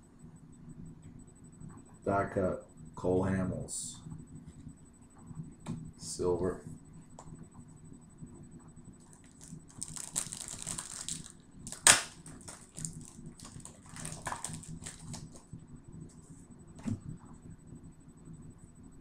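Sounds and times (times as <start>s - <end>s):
cards and foil wrapper rustling: 9.0s - 15.4s
sharp loud crackle: 9.7s - 15.3s.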